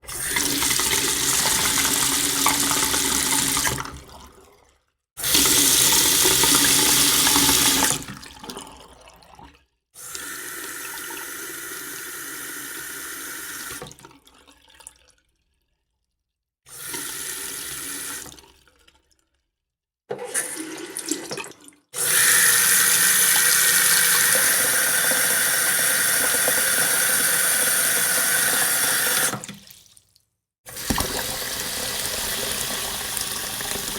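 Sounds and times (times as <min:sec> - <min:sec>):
tap water running into sink: 0:00.1 - 0:04.2, 0:05.2 - 0:08.8, 0:20.1 - 0:30.0, 0:30.7 - 0:33.9.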